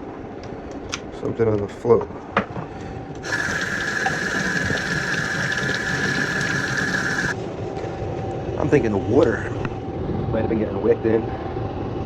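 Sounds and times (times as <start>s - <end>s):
pump motor high whine: 3.2s - 7.4s.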